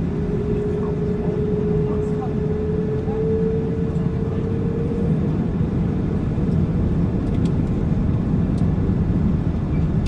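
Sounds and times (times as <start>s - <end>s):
steady whine: 0.0s - 9.0s
jet engines rumbling: 0.0s - 10.0s.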